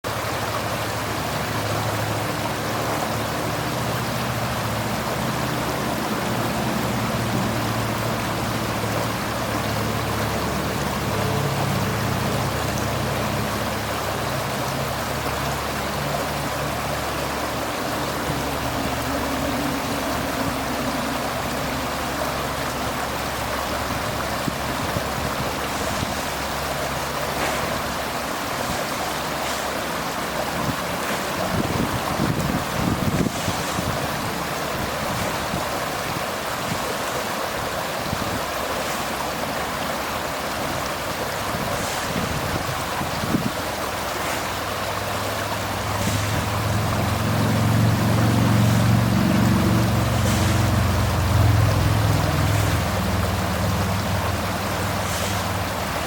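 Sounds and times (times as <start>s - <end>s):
creek water running over rocks: 0.0s - 56.0s.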